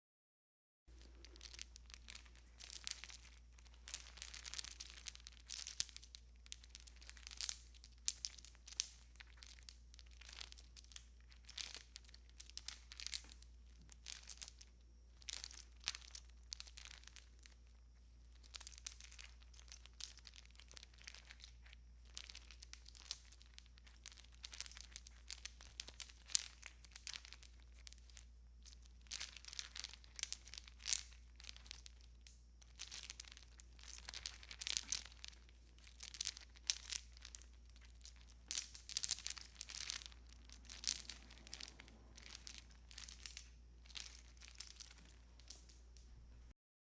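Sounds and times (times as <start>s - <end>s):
string lights rustling and clicking: 18.4s - 46.5s.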